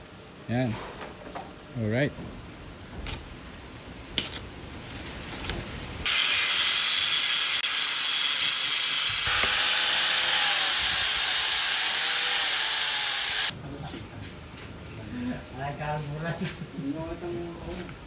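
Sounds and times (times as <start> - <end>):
power tool hissing and whining: 6.0 - 13.5.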